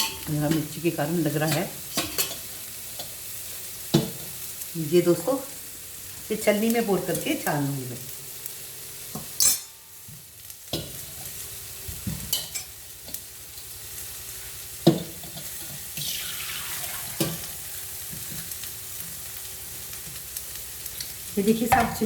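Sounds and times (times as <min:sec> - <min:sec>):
vegetables sizzling in butter: 0:00.0 - 0:22.0
stock pouring into pan: 0:15.8 - 0:21.3.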